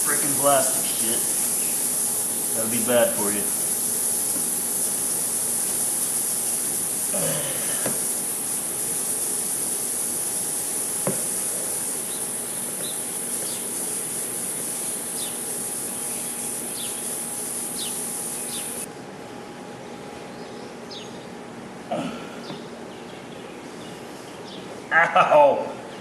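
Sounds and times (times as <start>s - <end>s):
plastic welder hissing: 0.0s - 18.9s
faint steady hum: 0.0s - 26.0s.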